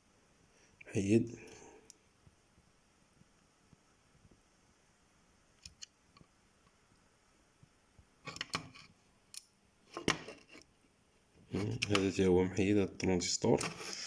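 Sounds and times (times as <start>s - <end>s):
circuit board clicks and scraping: 8.3s - 10.7s.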